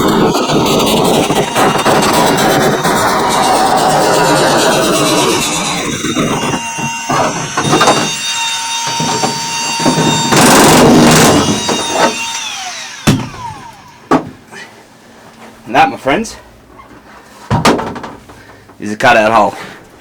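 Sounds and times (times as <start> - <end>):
power tool cutting sheet metal: 0.0 - 14.2.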